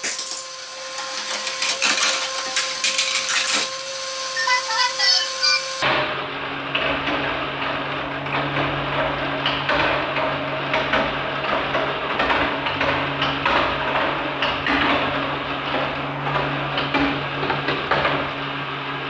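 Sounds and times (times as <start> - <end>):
marbles clattering on plastic: 0.0 - 3.8
small electric toy motor humming: 0.0 - 5.9.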